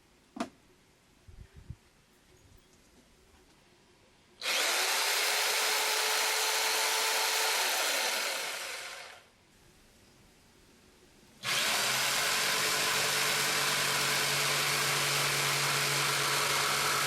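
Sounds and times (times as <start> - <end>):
electric power tool whining: 4.4 - 9.2, 11.4 - 17.0.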